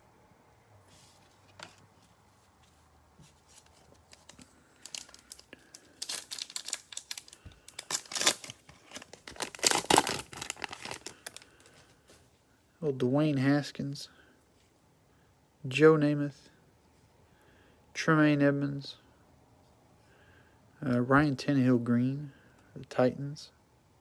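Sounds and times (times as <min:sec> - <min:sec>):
plastic wrapper tearing and crinkling: 0:03.6 - 0:11.7.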